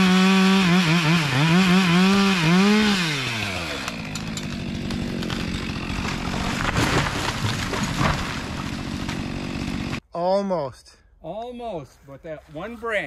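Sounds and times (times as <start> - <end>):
chainsaw cutting and idling: 0.0 - 10.0.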